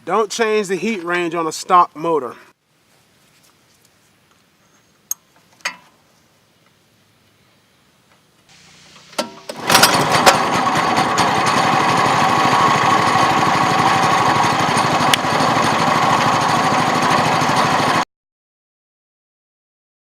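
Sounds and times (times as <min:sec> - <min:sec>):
small engine running: 0:09.5 - 0:18.0.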